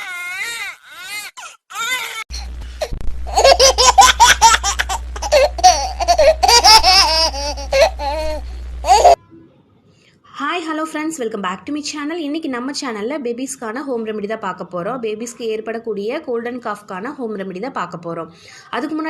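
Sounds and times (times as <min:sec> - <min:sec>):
baby crying: 0:00.0 - 0:02.5, 0:03.3 - 0:09.2
steady low hum: 0:02.3 - 0:09.2
baby laughing: 0:02.8 - 0:09.2.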